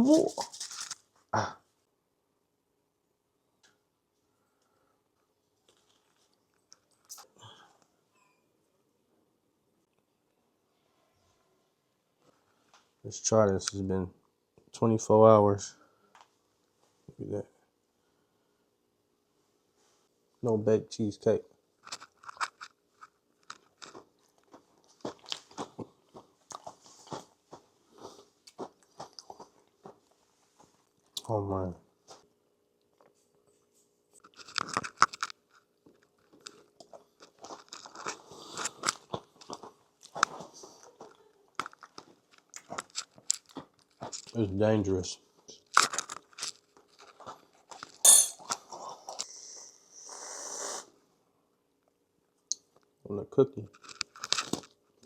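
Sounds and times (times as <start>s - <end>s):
crunchy bites and chewing: 21.8s - 26.7s, 34.2s - 40.4s, 41.5s - 44.4s, 45.5s - 48.0s, 53.8s - 54.8s
utensil clinking on dish: 48.1s - 48.5s.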